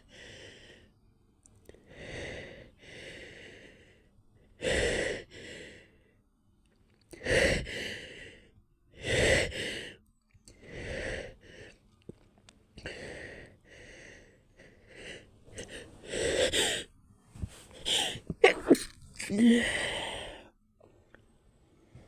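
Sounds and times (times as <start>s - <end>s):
person gasping and sighing: 17.7s - 20.5s.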